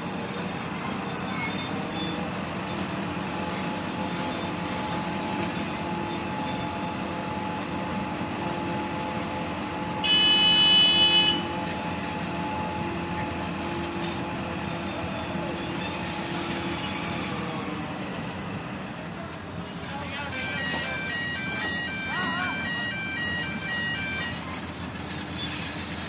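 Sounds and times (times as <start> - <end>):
crane engine running: 0.0 - 26.0
high-pitched horn: 10.0 - 11.5.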